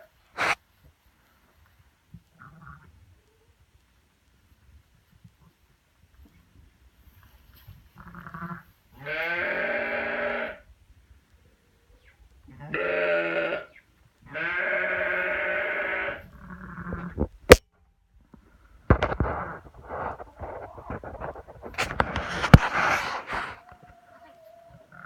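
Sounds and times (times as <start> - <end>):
lamb bleating: 8.0 - 10.6, 12.5 - 13.7, 14.3 - 17.2
scuffling noises: 18.9 - 24.0.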